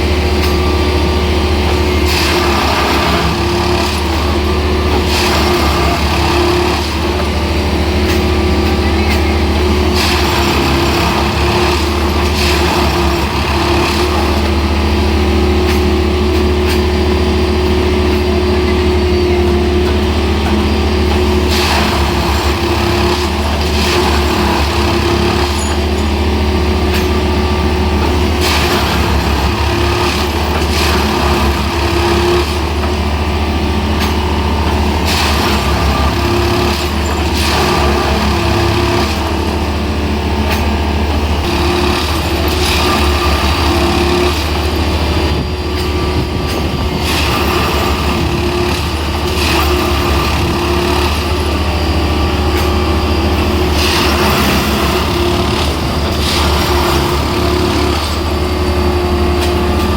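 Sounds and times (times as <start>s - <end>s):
diesel engine humming: 0.0s - 59.9s.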